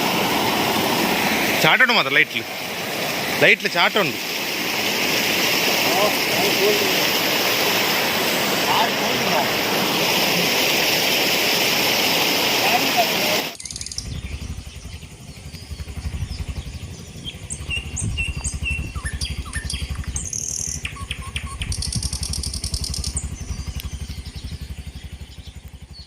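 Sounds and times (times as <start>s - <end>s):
rapid low throbbing: 13.5s - 26.0s
birds chirping and whistling: 13.6s - 26.0s.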